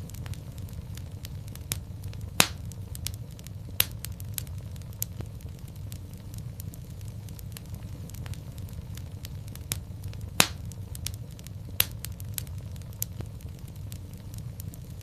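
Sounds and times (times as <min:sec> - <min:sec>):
fireplace flames rumbling: 0:00.0 - 0:15.0
wood fire snapping and popping: 0:00.0 - 0:15.0.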